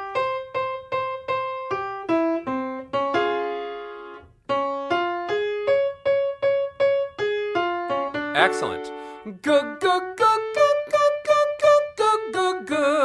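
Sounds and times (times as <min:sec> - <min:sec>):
held piano chord: 0:00.0 - 0:09.3
piano notes stepping up and down: 0:00.0 - 0:13.0.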